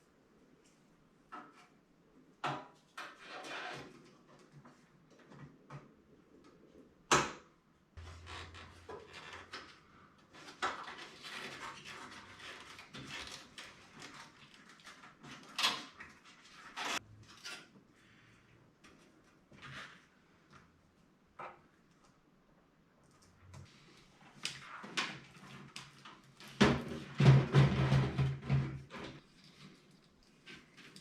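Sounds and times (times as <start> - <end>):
rustling and scraping of cables: 8.0 - 22.2, 23.0 - 31.0.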